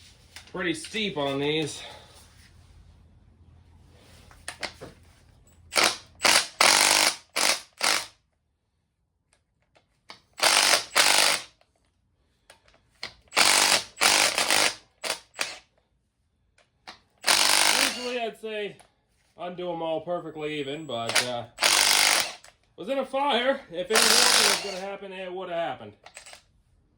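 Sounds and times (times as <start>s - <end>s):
ratchet wrench clicking: 5.7s - 8.1s, 10.1s - 11.6s, 13.3s - 15.6s, 17.2s - 18.1s, 21.1s - 22.5s, 24.0s - 24.8s, 26.1s - 26.4s.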